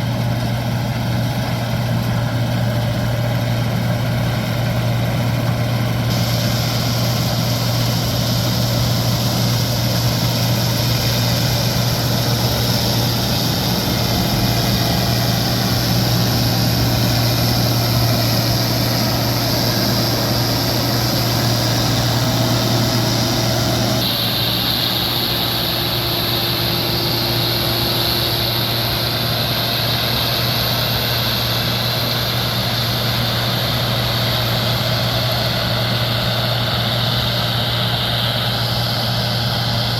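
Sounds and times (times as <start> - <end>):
combine harvester engine hum: 0.0 - 39.9
high whine: 0.2 - 39.9.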